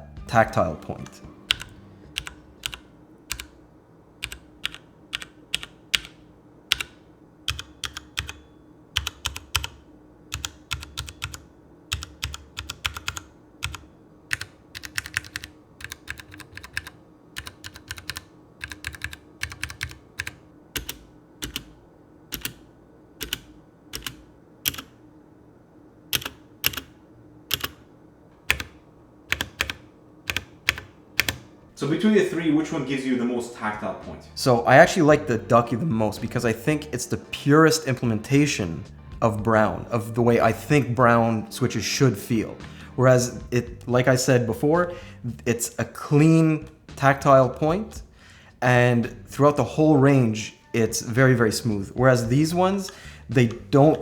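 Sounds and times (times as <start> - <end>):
typing on mechanical keyboard: 1.5 - 3.6, 4.2 - 22.6, 23.2 - 24.9, 26.2 - 26.9, 27.5 - 27.8, 28.5 - 31.5.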